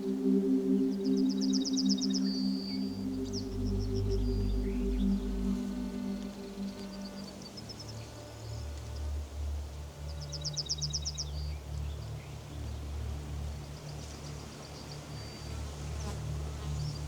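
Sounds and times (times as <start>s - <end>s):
steady low rumble: 0.0s - 10.0s.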